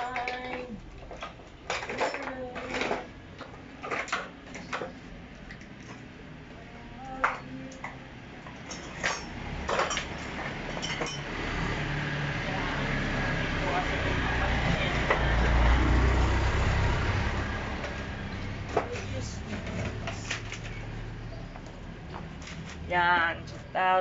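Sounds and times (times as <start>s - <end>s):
clinks of small hard objects: 0.0s - 3.1s, 8.5s - 11.3s.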